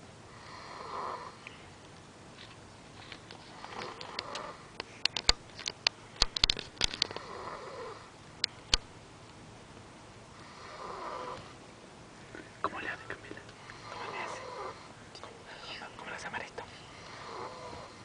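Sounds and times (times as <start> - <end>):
person snoring softly: 0.3 - 1.6, 3.5 - 4.8, 7.0 - 8.1, 10.3 - 11.6, 12.4 - 15.0, 16.6 - 18.0
sharp clicks: 4.0 - 7.3, 8.4 - 9.4.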